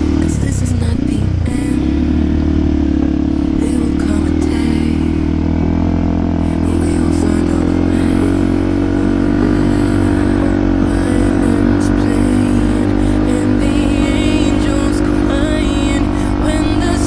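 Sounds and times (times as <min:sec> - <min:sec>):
motorcycle engine running: 0:00.0 - 0:17.0.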